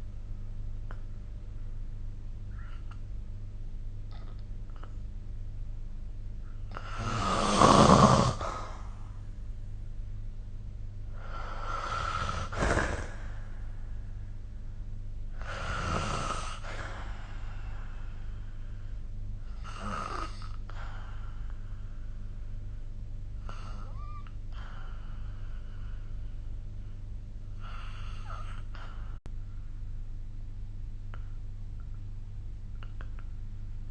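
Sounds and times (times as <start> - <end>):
steady low hum: 0.0 - 33.9
person snoring: 6.7 - 9.0, 11.1 - 13.4, 15.4 - 18.1, 19.5 - 21.2, 27.6 - 29.1
faint breath: 15.4 - 19.8, 20.5 - 29.8.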